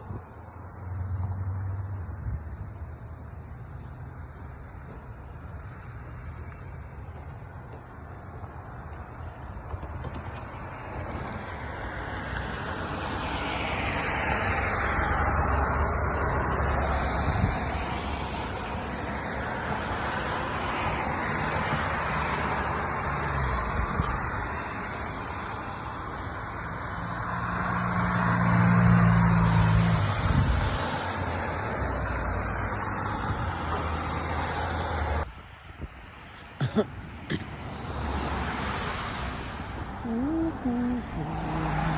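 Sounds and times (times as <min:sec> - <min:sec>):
road traffic passing: 0:00.0 - 0:41.9
low engine hum: 0:39.4 - 0:41.9.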